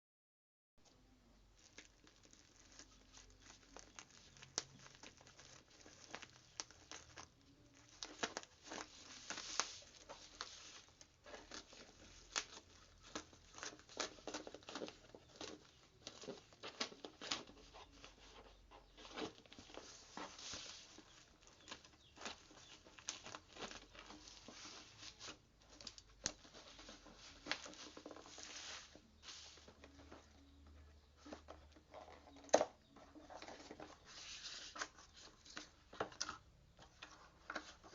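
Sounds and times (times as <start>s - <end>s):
parcel wrapping crinkling and tearing: 0.9s - 18.3s, 19.0s - 30.5s.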